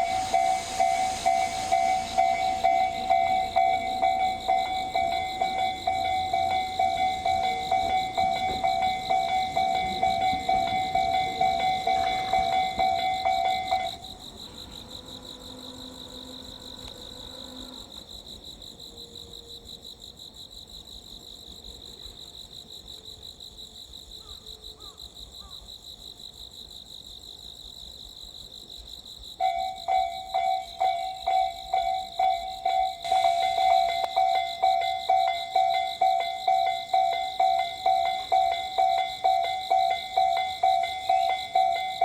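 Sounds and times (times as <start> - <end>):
level crossing warning bell ringing: 0.0 - 18.0, 29.4 - 42.0
insects trilling: 0.0 - 42.0.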